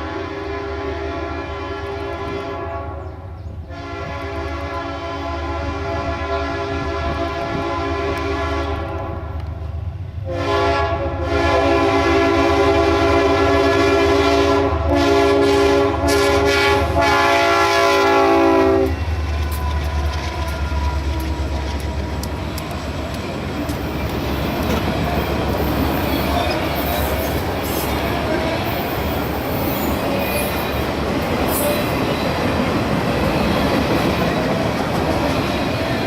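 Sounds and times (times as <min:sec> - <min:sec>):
locomotive air horn chord: 0:00.0 - 0:09.4, 0:10.2 - 0:19.1
train rumble: 0:01.3 - 0:36.0
wheel clicks on rail joints: 0:19.2 - 0:27.0.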